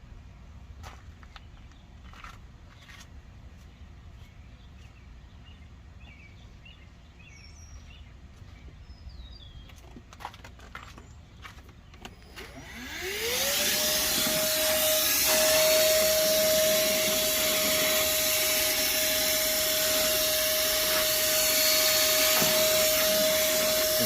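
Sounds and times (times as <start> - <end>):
handheld vacuum motor whine: 12.1 - 24.0.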